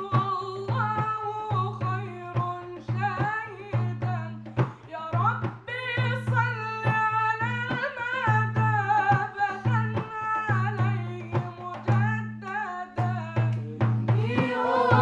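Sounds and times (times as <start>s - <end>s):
person singing devotional song: 0.0s - 15.0s
drum hits: 13.4s - 15.0s.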